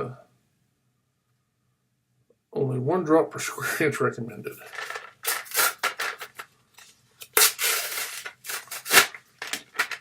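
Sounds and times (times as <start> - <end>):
packaging tearing and crinkling: 4.7 - 6.5, 7.2 - 10.0
sharp crack: 7.2 - 10.0.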